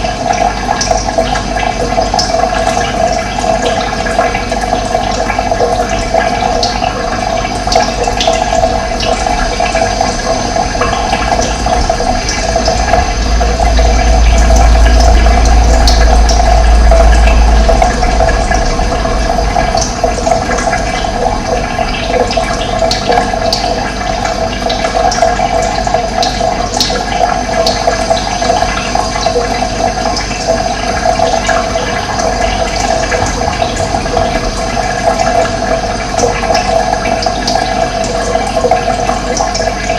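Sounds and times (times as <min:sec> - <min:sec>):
running water rushing: 0:00.0 - 0:39.9
deep low rumble: 0:05.9 - 0:25.0, 0:30.8 - 0:37.9.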